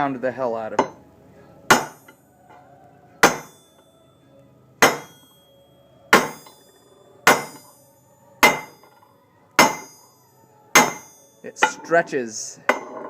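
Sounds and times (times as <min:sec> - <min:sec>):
hammer striking metal bar: 0:00.7 - 0:01.0, 0:01.7 - 0:02.2, 0:03.2 - 0:03.8, 0:04.8 - 0:07.8, 0:08.4 - 0:09.0, 0:09.6 - 0:12.0, 0:12.7 - 0:13.0.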